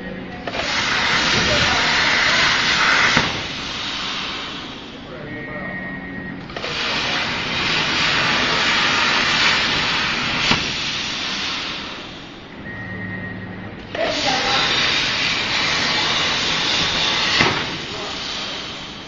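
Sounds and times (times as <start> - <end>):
plasma torch hissing: 0.4 - 5.1, 6.5 - 12.5, 13.9 - 19.0.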